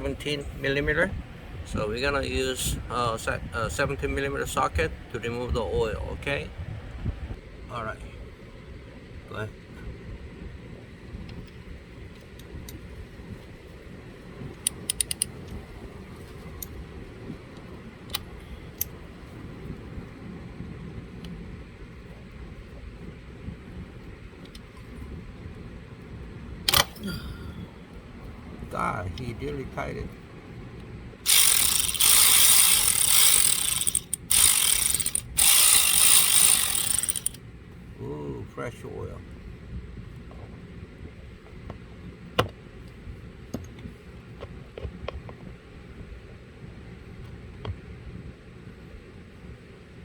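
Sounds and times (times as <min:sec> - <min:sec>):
low background rumble: 0:00.0 - 0:35.4
socket wrench clicks: 0:14.7 - 0:15.4, 0:26.7 - 0:27.0, 0:31.3 - 0:37.4.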